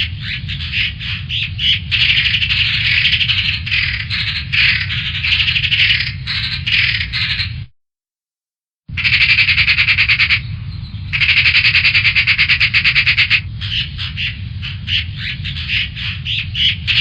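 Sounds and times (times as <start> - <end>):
magpie chattering: 0.2 - 7.5, 8.9 - 10.5, 11.1 - 17.0
low steady hum: 8.9 - 17.0.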